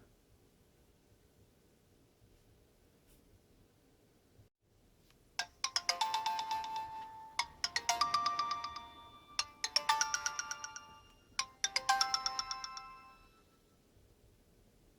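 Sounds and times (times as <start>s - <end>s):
mobile phone ringtone: 5.4s - 13.4s.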